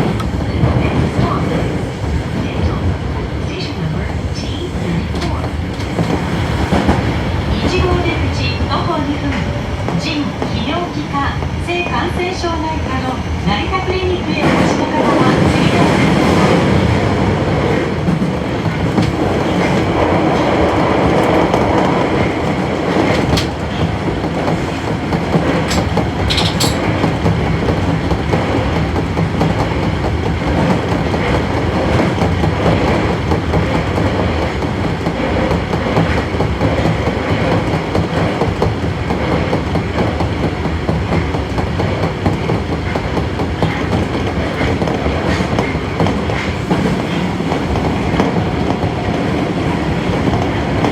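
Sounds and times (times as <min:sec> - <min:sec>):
subway train running rumble: 0:00.0 - 0:50.9
wheels clicking over rail joints: 0:23.0 - 0:27.8.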